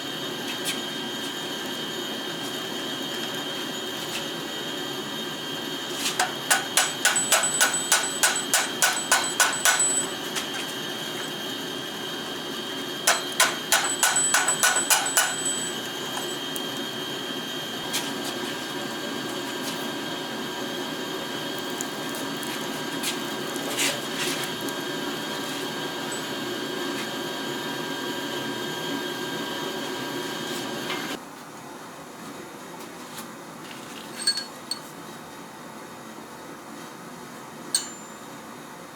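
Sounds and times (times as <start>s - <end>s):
hammer striking anvil: 6.5s - 10.2s, 13.1s - 15.8s, 37.8s - 38.3s.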